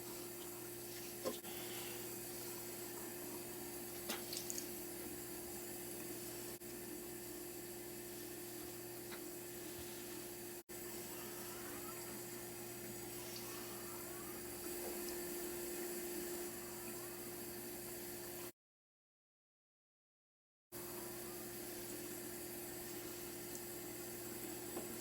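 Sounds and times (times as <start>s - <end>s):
tap water running into sink: 2.8s - 7.6s, 21.0s - 25.0s.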